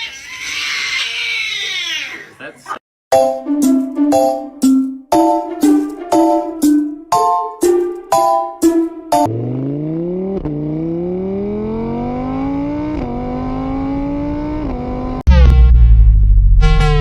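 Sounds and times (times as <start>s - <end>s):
car engine accelerating: 9.2s - 17.0s.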